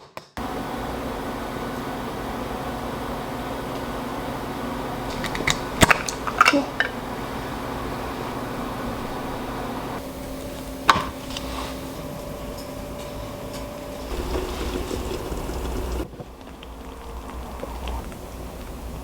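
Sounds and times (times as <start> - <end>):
liquid bubbling in a pot: 14.0 - 19.0.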